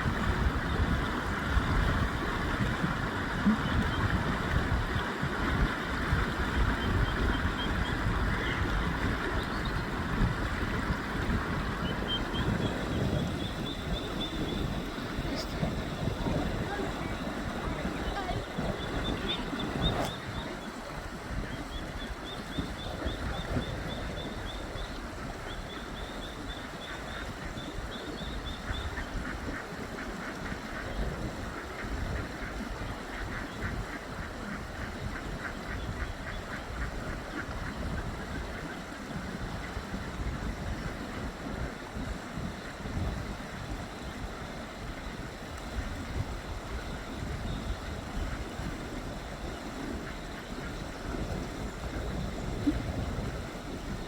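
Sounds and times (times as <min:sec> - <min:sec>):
fast river water rushing: 0:00.0 - 0:27.9
ducklings peeping: 0:11.6 - 0:20.6.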